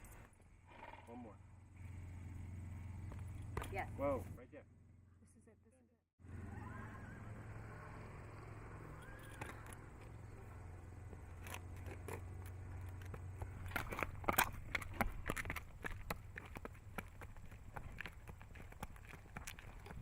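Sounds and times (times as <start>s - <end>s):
hooves on hard ground: 2.9s - 4.4s, 9.0s - 20.0s
steady low hum: 6.2s - 20.0s.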